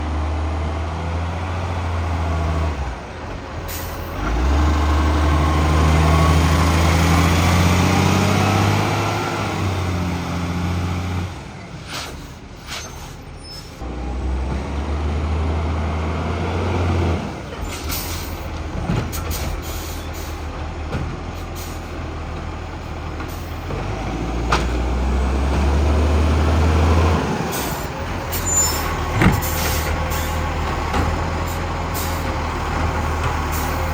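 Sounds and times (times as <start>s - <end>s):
diesel engine revving: 0.0s - 33.9s
air brake hisses: 3.7s - 4.1s, 11.8s - 13.8s, 17.7s - 18.5s, 19.2s - 20.4s, 31.5s - 32.3s.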